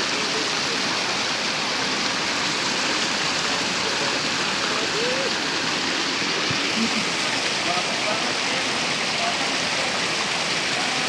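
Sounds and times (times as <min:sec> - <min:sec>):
waterfall rushing water: 0:00.0 - 0:11.0.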